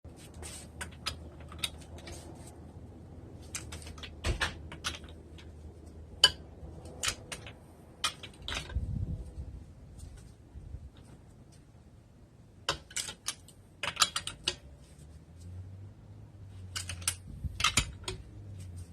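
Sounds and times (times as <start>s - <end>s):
metal tools clicking and clinking: 16.6s - 18.3s.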